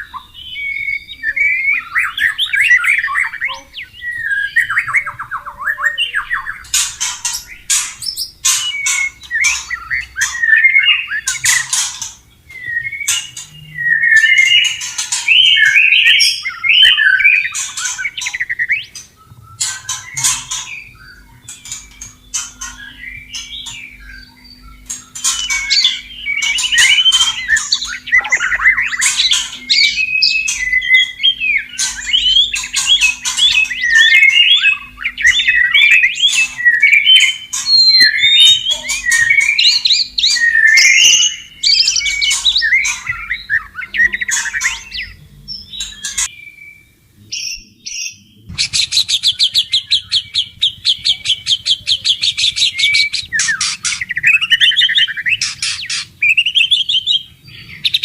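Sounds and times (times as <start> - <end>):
bird singing whistled phrases: 0.0 - 6.7, 7.4 - 11.8, 12.5 - 58.0
bird repeating notes rapidly: 0.0 - 46.3.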